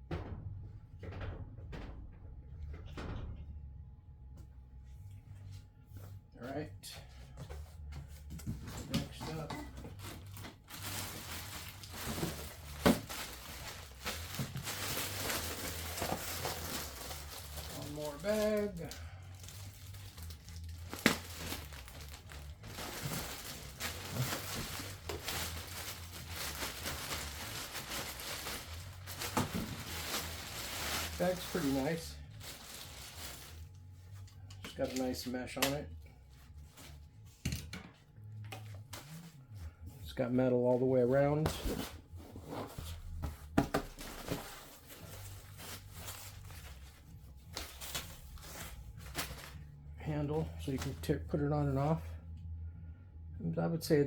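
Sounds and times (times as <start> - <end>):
low steady hum: 0.0 - 54.0
plastic packaging crinkling: 9.9 - 33.8, 43.8 - 49.6.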